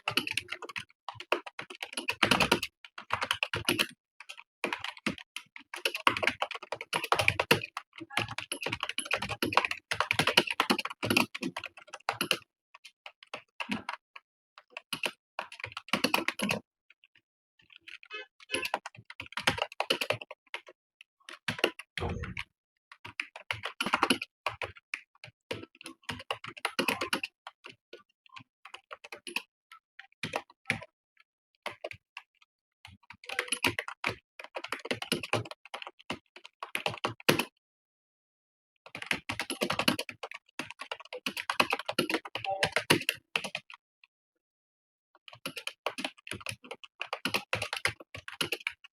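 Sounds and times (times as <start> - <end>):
computer keyboard typing: 0.1 - 14.0, 14.7 - 16.6, 17.8 - 20.7, 23.0 - 24.8, 25.5 - 27.8, 32.8 - 37.5, 38.9 - 43.7, 45.3 - 48.9.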